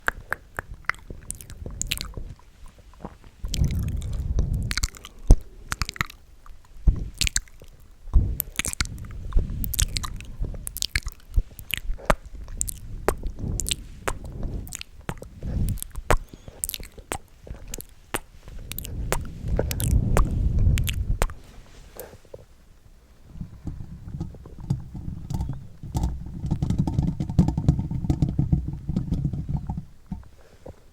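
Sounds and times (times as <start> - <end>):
wet mouth clicks and smacks: 0.0 - 21.4
low rumbling noise: 0.0 - 30.8.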